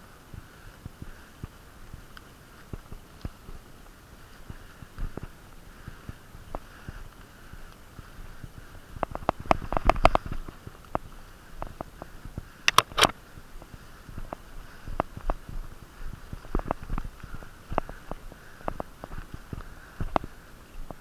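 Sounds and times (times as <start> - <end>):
knocks clicks and rustling: 12.7 - 13.1
sharp cracks: 12.7 - 13.2.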